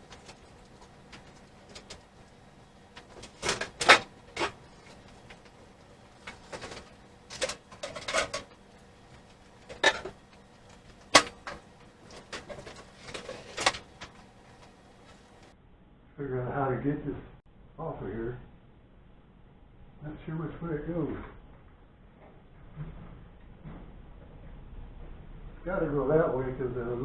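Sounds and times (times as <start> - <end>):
tools and metal cover clanking: 3.1 - 4.6, 6.2 - 8.6, 9.6 - 10.2.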